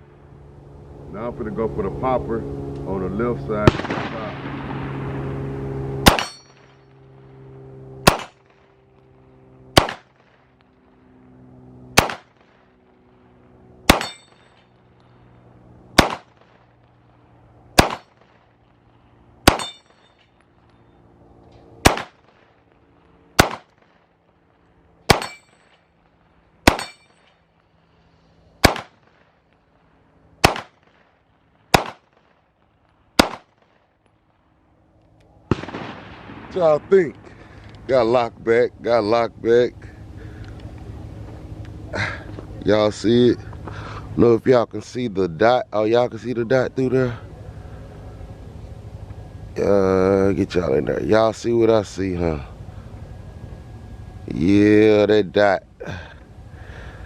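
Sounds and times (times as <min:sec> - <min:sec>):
pistol shots: 0:03.6 - 0:04.8, 0:06.0 - 0:06.7, 0:08.0 - 0:08.5, 0:09.7 - 0:10.4, 0:11.9 - 0:12.6, 0:13.8 - 0:14.6, 0:15.9 - 0:16.7, 0:17.8 - 0:18.5, 0:19.4 - 0:20.1, 0:21.8 - 0:22.6, 0:23.4 - 0:24.0, 0:25.1 - 0:25.8, 0:26.6 - 0:27.3, 0:28.6 - 0:29.3, 0:30.4 - 0:31.1, 0:31.7 - 0:32.4, 0:33.2 - 0:33.8, 0:35.5 - 0:36.7
bullets clanging on steel: 0:06.1 - 0:06.9, 0:13.9 - 0:14.8, 0:19.5 - 0:20.4, 0:25.1 - 0:25.8, 0:26.7 - 0:27.4.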